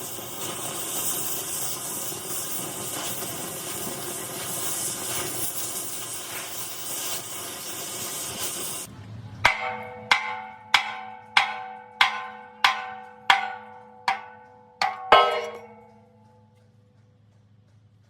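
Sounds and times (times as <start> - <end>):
hammer striking steel: 9.4 - 16.6.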